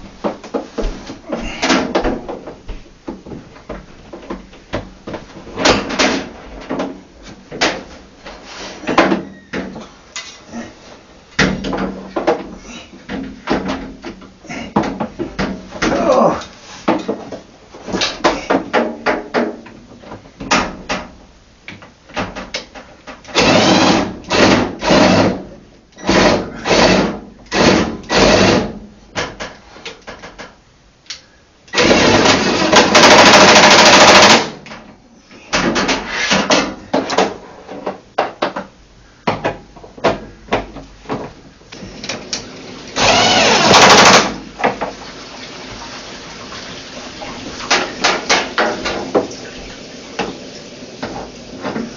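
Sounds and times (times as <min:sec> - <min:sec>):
power driver running: 0:42.9 - 0:44.4.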